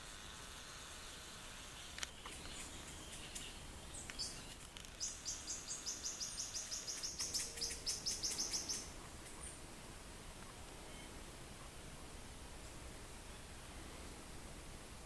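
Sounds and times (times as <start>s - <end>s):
small bird singing: 2.2s - 9.6s.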